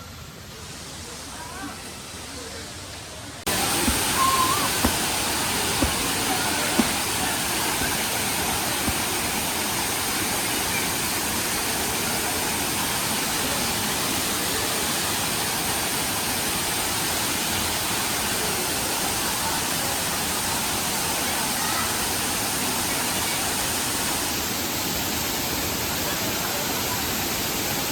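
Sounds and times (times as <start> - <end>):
waterfall rushing: 3.5 - 17.1
faint knocks: 3.8 - 9.4.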